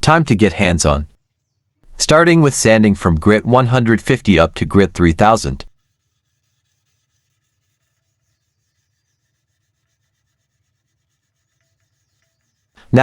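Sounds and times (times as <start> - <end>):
sandpaper rubbing on steel blade: 5.7 - 12.9.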